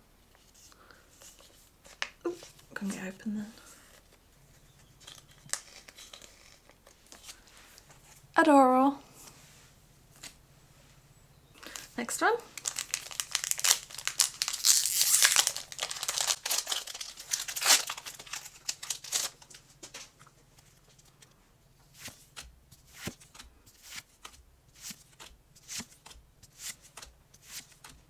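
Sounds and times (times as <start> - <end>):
foil wrapper tearing and crinkling: 5.1 - 7.4, 11.6 - 20.1.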